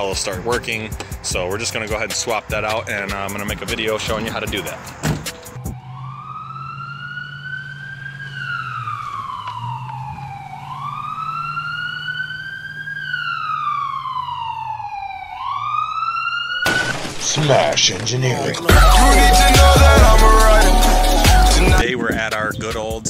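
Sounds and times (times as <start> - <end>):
siren wailing: 5.5 - 17.2.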